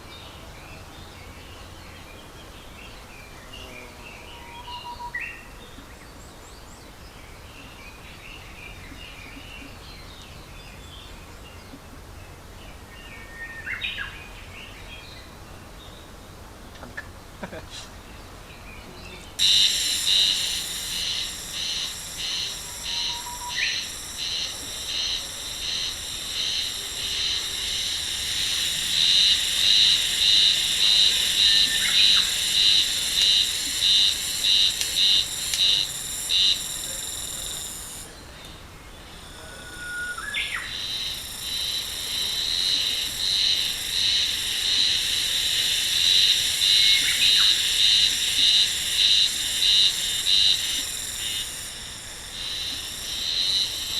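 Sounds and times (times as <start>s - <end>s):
insect shrill pulsing call: 19.4s - 38.1s, 39.2s - 53.9s.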